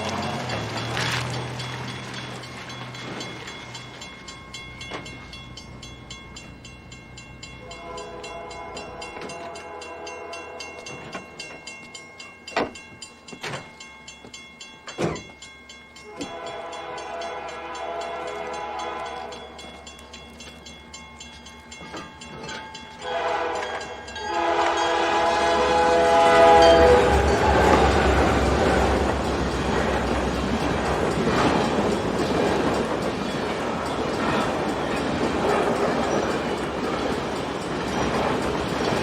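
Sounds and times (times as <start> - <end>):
horn-like chord of held tones: 7.6 - 10.8, 16.1 - 19.4, 23.0 - 28.2.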